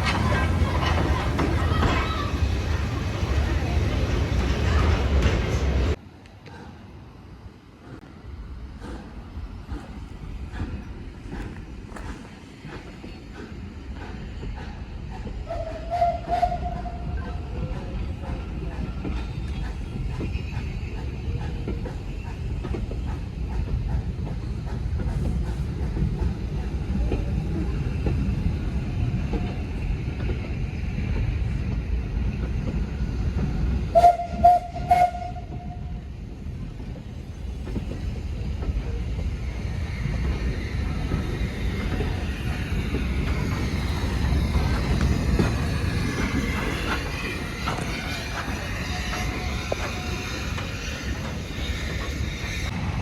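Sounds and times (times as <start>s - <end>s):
steam train low rumble: 0.0s - 53.0s
steam locomotive whistle toots: 15.4s - 17.2s, 33.9s - 36.0s.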